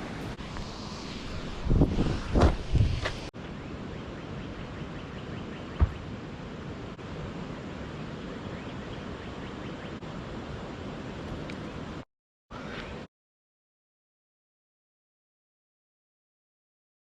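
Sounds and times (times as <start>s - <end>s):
brief low thump: 2.3s - 3.2s, 5.8s - 6.0s.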